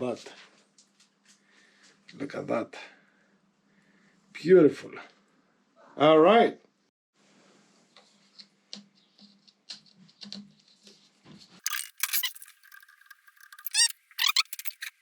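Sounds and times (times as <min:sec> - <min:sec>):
small hard objects clicking: 0:11.6 - 0:15.0.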